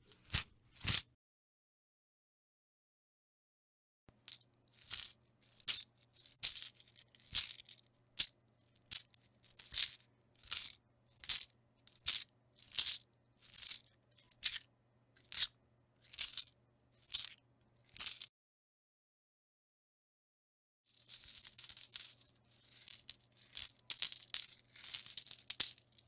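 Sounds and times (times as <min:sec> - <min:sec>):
coins jingling: 0:00.1 - 0:01.0, 0:04.8 - 0:07.6, 0:08.9 - 0:11.4, 0:12.0 - 0:14.6, 0:16.1 - 0:16.4, 0:21.1 - 0:26.0.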